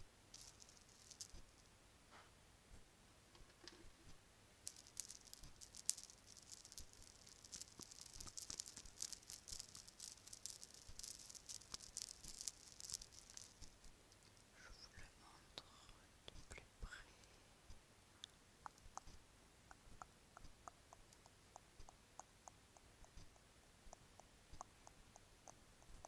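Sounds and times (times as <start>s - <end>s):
bracelets jangling: 0.3s - 1.6s, 4.6s - 14.4s.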